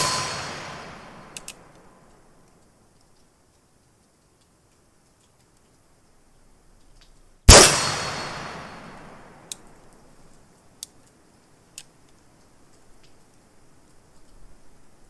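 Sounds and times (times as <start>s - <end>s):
revolver shot with echo: 0.0s - 1.4s, 7.5s - 9.4s
faint sharp clicks: 1.3s - 7.3s, 9.4s - 14.8s.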